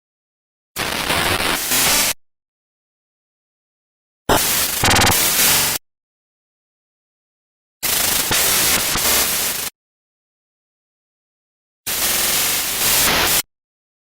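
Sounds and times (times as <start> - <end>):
tape static with buzzing hum: 4.7 - 5.7.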